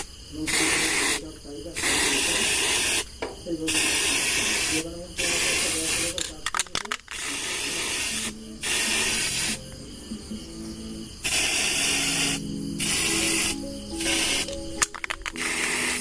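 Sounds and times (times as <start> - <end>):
spray can spraying: 0.0 - 1.2, 1.8 - 3.1, 3.7 - 9.8, 11.2 - 16.0
background music: 7.9 - 16.0.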